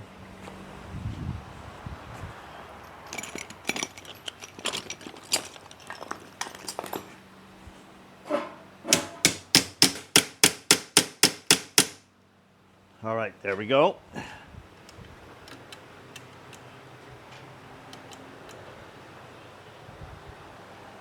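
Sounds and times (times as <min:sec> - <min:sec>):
handling knocks and clicks: 0:02.8 - 0:07.2, 0:08.9 - 0:12.0, 0:14.8 - 0:18.7
hammer tapping metal: 0:08.9 - 0:12.0.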